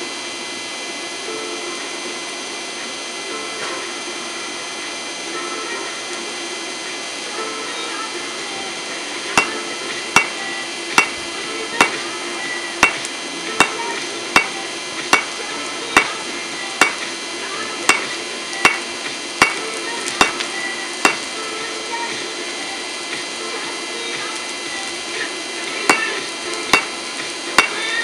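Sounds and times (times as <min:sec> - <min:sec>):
hammer ringing on anvil: 0:09.4 - 0:10.4, 0:11.0 - 0:11.2, 0:11.8 - 0:12.0, 0:12.8 - 0:15.4, 0:16.0 - 0:16.2, 0:16.8 - 0:17.0, 0:17.9 - 0:20.4, 0:21.0 - 0:21.3, 0:25.9 - 0:27.0, 0:27.6 - 0:27.9.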